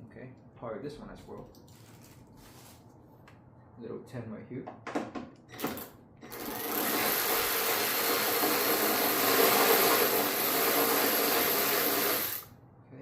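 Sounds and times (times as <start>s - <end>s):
power drill running: 5.6s - 12.5s.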